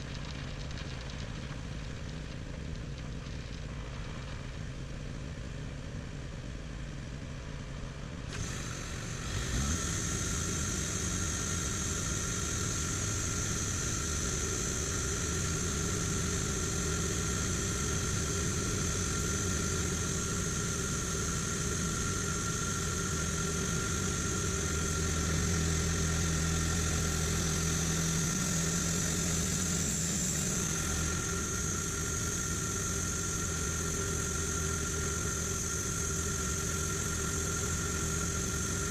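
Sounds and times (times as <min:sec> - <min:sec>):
sawmill engine rumble: 0:00.0 - 0:38.9
high steady saw whine: 0:08.3 - 0:38.9.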